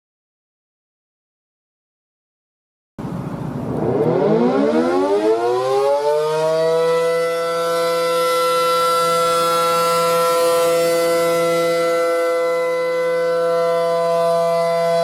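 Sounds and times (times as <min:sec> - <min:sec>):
warning siren winding up: 0:03.7 - 0:15.0.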